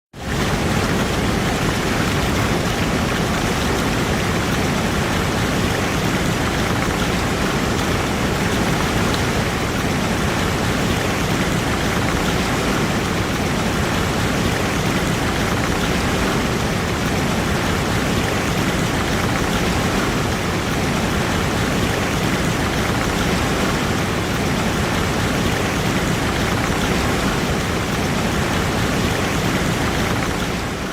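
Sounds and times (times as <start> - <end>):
waterfall rushing: 0.2 - 30.9.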